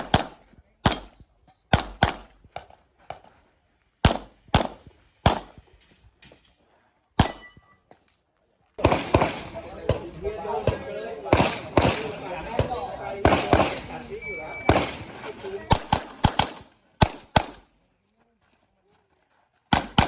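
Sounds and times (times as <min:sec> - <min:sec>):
handgun shots: 0:07.2 - 0:07.5, 0:14.6 - 0:17.6.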